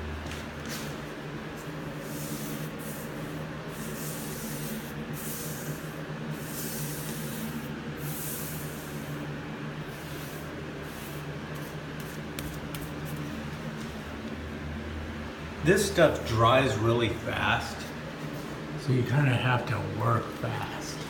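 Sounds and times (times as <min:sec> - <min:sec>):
steady low hum: 0:00.0 - 0:21.0
paintbrush strokes on wood: 0:01.6 - 0:09.1, 0:09.8 - 0:13.3.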